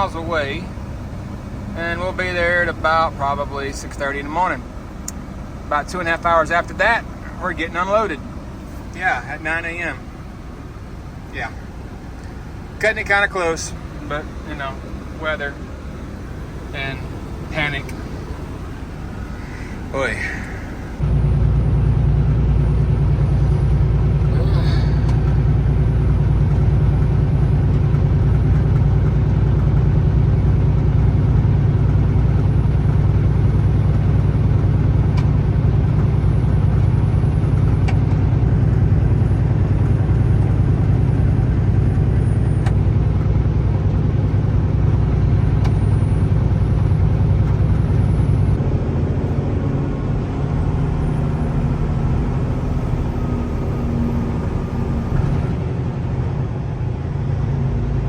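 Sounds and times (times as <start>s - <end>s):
truck diesel engine rumble: 0.0s - 58.0s
higher hum: 8.2s - 22.4s, 23.0s - 26.8s.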